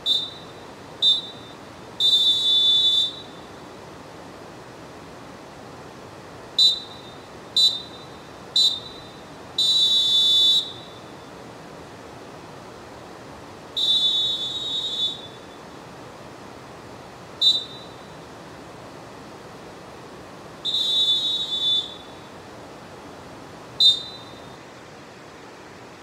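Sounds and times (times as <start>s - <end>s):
referee whistle blasts: 0.0s - 3.6s, 6.6s - 11.1s, 13.8s - 15.6s, 17.4s - 18.2s, 20.6s - 22.3s, 23.8s - 24.6s
background hiss: 0.0s - 26.0s.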